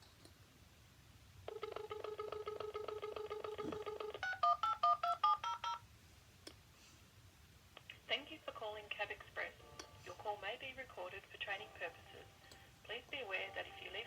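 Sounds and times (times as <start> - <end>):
keypad touch-tone beeps: 1.5 - 5.8
phone dial tone: 1.5 - 5.8.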